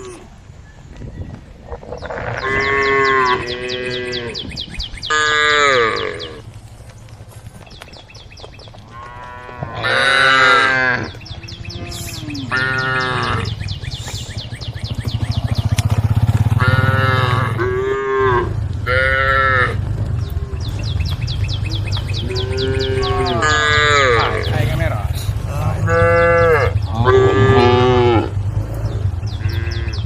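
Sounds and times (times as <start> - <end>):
cattle mooing: 1.9 - 4.5, 5.1 - 6.4, 8.9 - 13.6, 16.6 - 21.0, 21.6 - 30.0
steady low rumble: 9.6 - 30.0.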